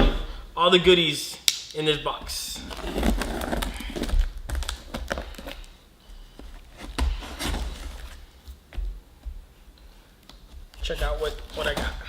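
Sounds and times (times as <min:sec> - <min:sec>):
cardboard scraping: 0:02.3 - 0:05.7, 0:06.3 - 0:08.5.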